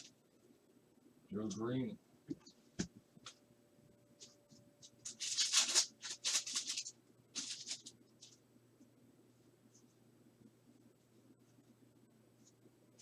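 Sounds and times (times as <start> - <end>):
cards and foil wrapper rustling: 4.2 - 8.4.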